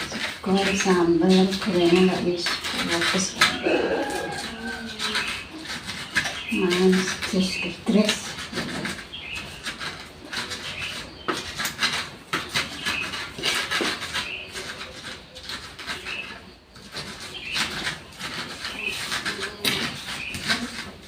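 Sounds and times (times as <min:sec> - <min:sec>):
knocks and clatter: 0:00.0 - 0:21.0
bird calls: 0:02.9 - 0:21.0.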